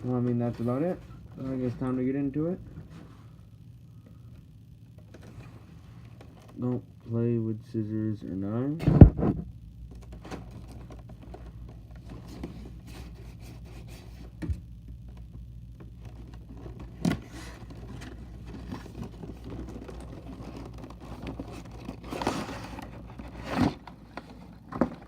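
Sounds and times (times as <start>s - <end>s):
cardboard scraping and rustling: 8.9s - 14.6s, 15.8s - 25.0s
cardboard tearing: 16.2s - 25.0s.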